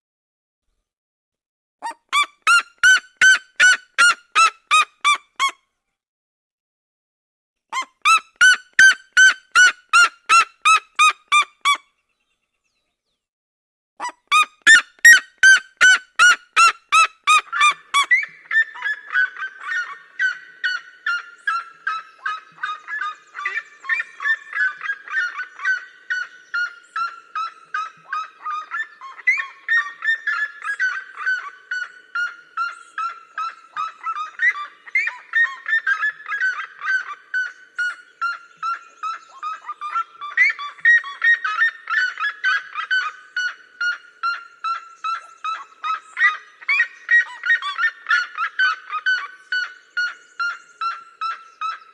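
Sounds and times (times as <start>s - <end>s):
birds yelping calls: 14.3s - 51.9s.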